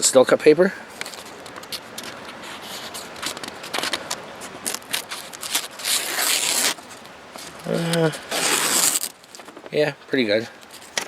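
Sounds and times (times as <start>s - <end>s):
knife slicing paper: 4.6s - 6.8s, 7.6s - 9.2s.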